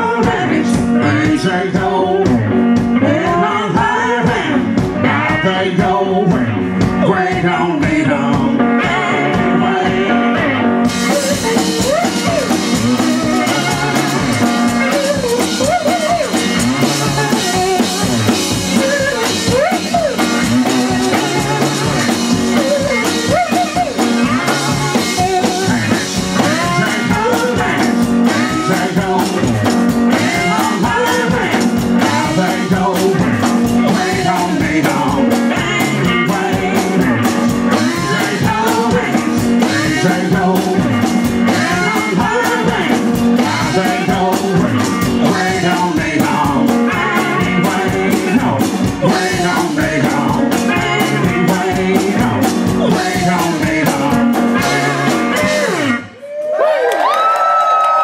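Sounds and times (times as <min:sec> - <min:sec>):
steady drum beat: 0:00.0 - 0:56.1
amplified guitar bending notes: 0:00.0 - 0:56.2.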